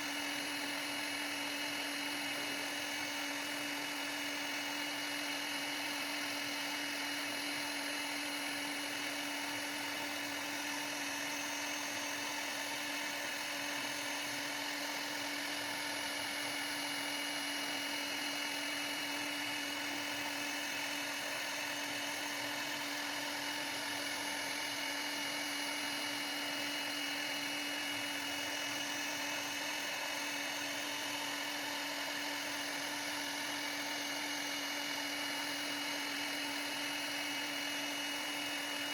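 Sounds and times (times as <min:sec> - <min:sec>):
router spindle whine: 0:00.0 - 0:38.9.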